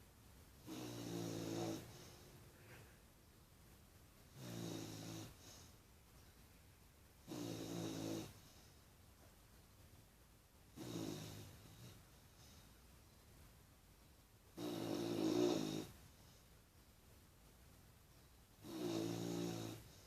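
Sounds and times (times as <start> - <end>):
puppy snoring: 0.6 - 2.4, 4.3 - 5.8, 7.2 - 8.7, 10.7 - 12.6, 14.6 - 16.4, 18.6 - 20.0
quiet breathing: 0.6 - 3.3, 4.3 - 9.4, 10.7 - 16.9, 18.1 - 20.0.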